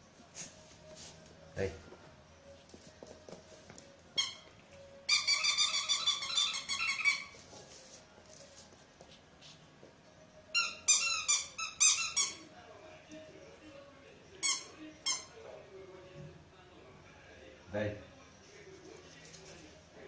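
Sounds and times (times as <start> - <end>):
squeaky dog toy squeaking: 4.1 - 7.4, 10.5 - 12.5, 14.4 - 15.4.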